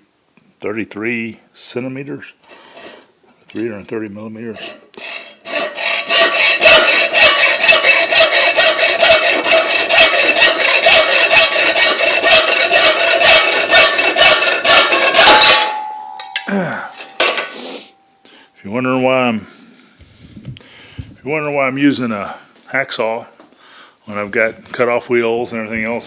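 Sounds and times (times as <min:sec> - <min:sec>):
hacksaw cutting metal rod: 0:04.5 - 0:18.0.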